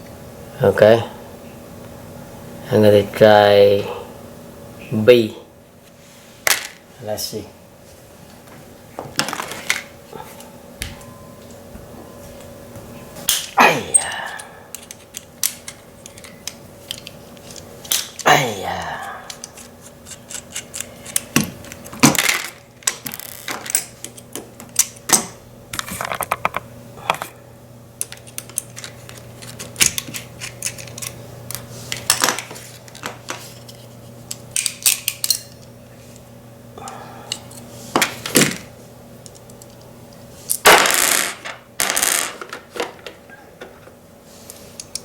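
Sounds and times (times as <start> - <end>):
faint steady hum: 0.0 - 45.0.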